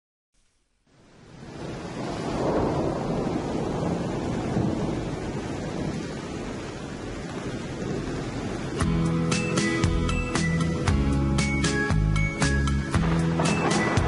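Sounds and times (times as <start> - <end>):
steady rain: 0.4 - 14.0
low rolls of thunder: 1.2 - 8.8, 13.0 - 14.0.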